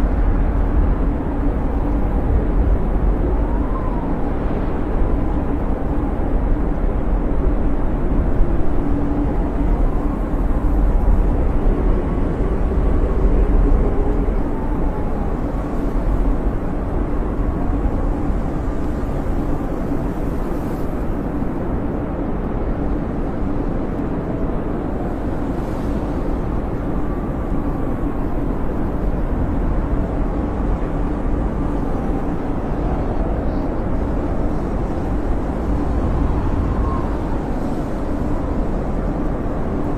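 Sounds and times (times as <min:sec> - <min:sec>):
blizzard wind blowing hard: 0:00.0 - 0:39.9.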